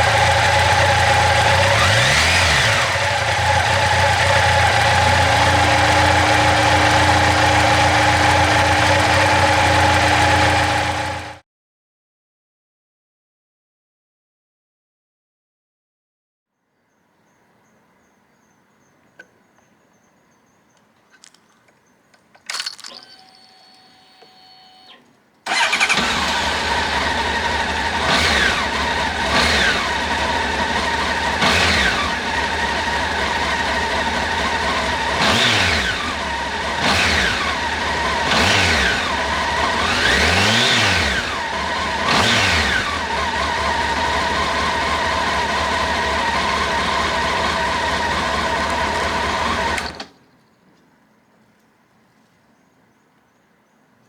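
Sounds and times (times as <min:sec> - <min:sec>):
motorcycle engine revving and idling: 0:00.0 - 0:11.4, 0:25.5 - 0:50.1
quiet clicks: 0:19.0 - 0:19.8, 0:20.7 - 0:25.4, 0:49.8 - 0:52.4.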